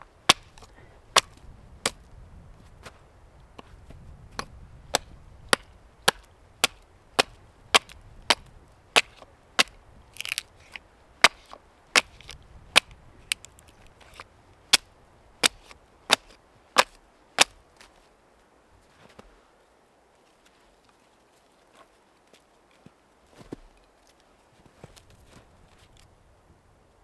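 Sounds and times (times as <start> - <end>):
blade chopping wood: 0.3 - 2.0, 4.3 - 17.6.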